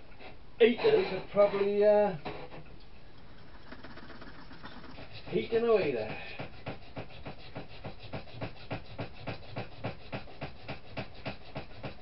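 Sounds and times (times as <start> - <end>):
sandpaper rubbing on metal: 4.0 - 12.0.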